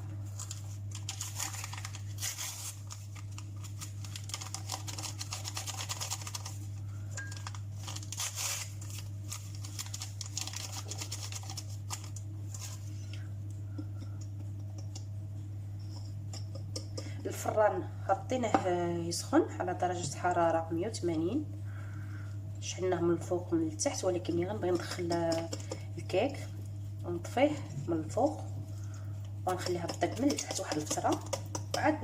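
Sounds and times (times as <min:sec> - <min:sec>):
low electrical hum: 0:00.0 - 0:32.0
paper sachets tearing and rustling: 0:00.3 - 0:06.7, 0:07.3 - 0:12.9.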